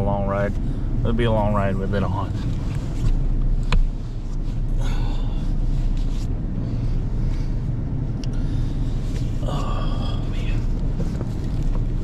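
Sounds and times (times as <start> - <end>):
diesel engine rumbling: 0.0 - 12.0.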